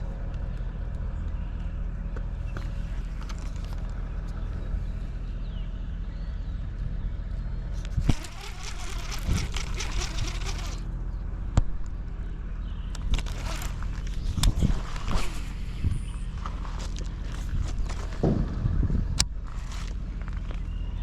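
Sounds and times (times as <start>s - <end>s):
engine humming: 0.0s - 21.0s
sharp clicks: 7.8s - 10.8s, 12.9s - 15.1s.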